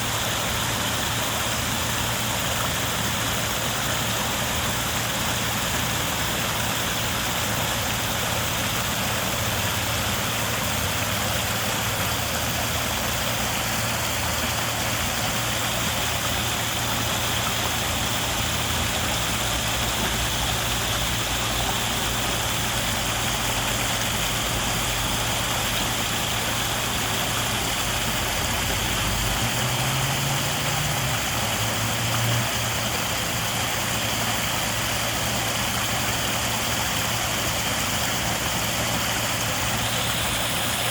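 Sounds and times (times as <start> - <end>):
waterfall roaring: 8.0 - 34.6, 37.4 - 40.9.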